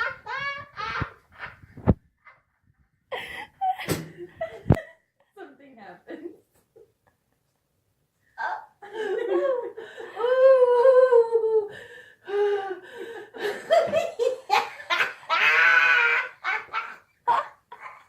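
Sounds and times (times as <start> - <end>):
woman laughing: 0.0 - 1.3, 3.1 - 5.0, 8.4 - 11.4.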